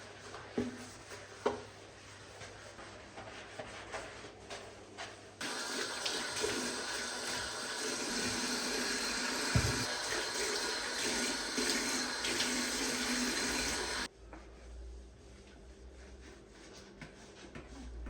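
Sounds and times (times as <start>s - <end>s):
water running from a tap: 5.4s - 14.1s.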